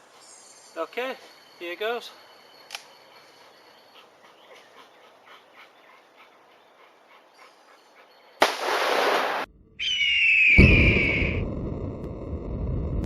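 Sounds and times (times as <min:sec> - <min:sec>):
revolver gunshot: 0:08.4 - 0:09.5
loud rumbling noise: 0:10.6 - 0:13.0.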